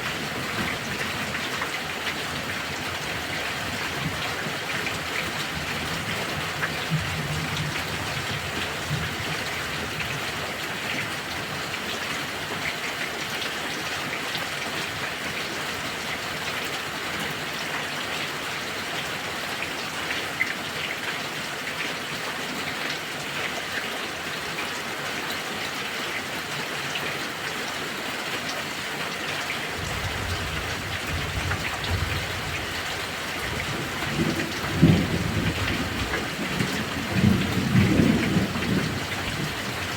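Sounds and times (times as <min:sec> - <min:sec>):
thunder rumbling: 0:29.8 - 0:39.9.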